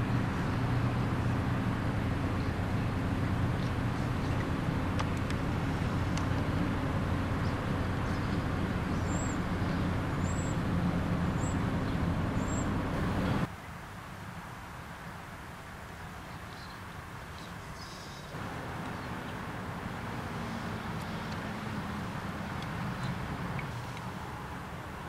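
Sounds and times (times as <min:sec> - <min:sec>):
motor vehicle rumbling: 0:00.0 - 0:13.5, 0:18.3 - 0:25.0.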